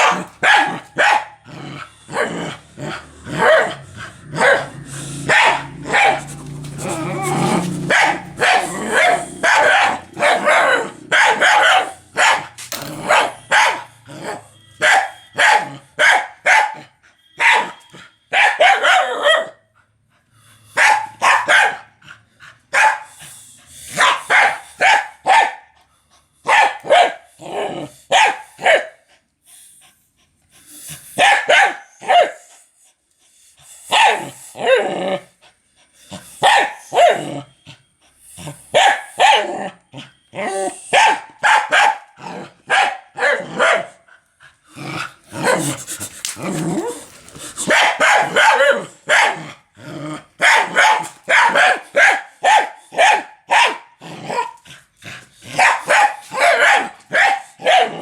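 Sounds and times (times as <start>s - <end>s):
dog barking: 0.0s - 1.4s, 3.4s - 3.8s, 4.4s - 6.3s, 7.8s - 19.6s, 20.8s - 22.0s, 22.7s - 23.1s, 24.0s - 25.7s, 26.5s - 27.3s, 28.1s - 29.0s, 31.2s - 32.5s, 33.9s - 34.4s, 36.4s - 37.4s, 38.7s - 39.6s, 40.9s - 44.0s, 47.7s - 49.5s, 50.4s - 54.6s, 55.6s - 58.0s.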